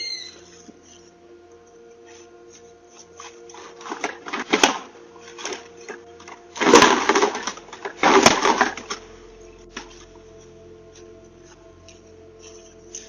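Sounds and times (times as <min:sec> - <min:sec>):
steady low hum: 0:00.0 - 0:13.0
rattling crunching bursts: 0:03.5 - 0:10.0.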